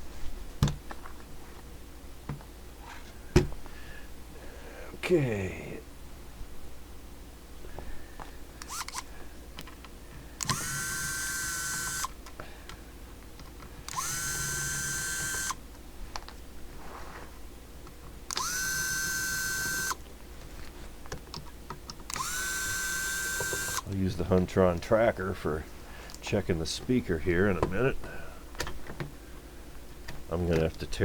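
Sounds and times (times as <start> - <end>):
small clicks and handling noises: 8.2 - 16.5, 17.8 - 24.9, 30.1 - 30.9
electric screwdriver motor whining: 8.6 - 9.1, 10.4 - 12.2, 13.9 - 15.6, 18.3 - 20.0, 22.1 - 23.8.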